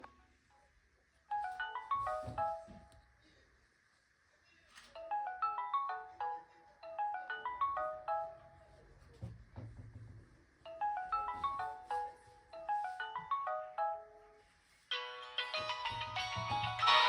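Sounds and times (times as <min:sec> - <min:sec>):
mobile phone ringing melody: 0:01.3 - 0:02.9, 0:05.0 - 0:08.7, 0:10.7 - 0:14.2, 0:14.9 - 0:17.0.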